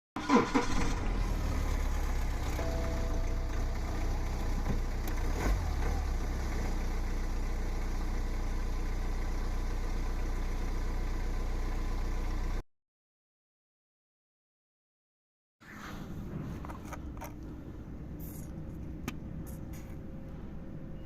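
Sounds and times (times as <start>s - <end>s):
diesel engine idling: 0.2s - 12.6s.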